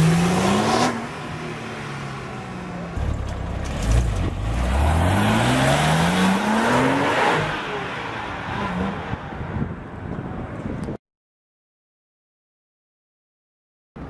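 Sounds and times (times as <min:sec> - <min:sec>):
car engine accelerating hard: 0:03.0 - 0:09.0.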